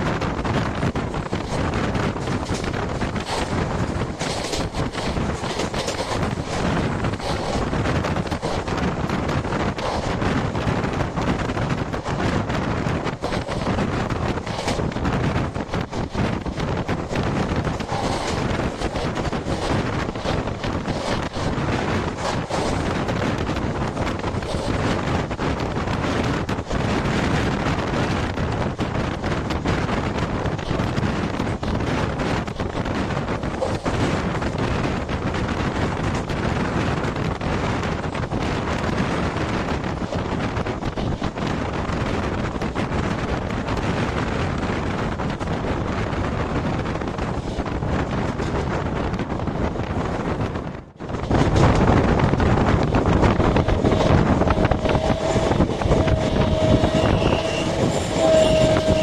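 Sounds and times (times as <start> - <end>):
passenger train running: 0.0 - 59.0
wind buffeting microphone: 0.0 - 59.0
locomotive horn blasts: 53.6 - 59.0.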